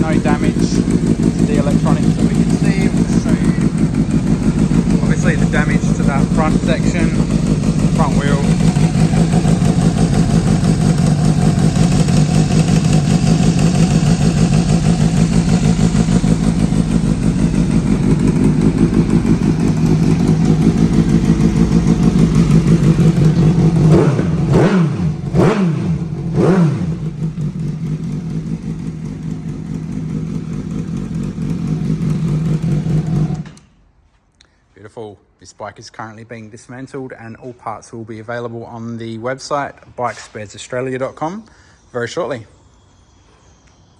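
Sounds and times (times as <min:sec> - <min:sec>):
motorcycle engine idling and revving: 0:00.0 - 0:33.7.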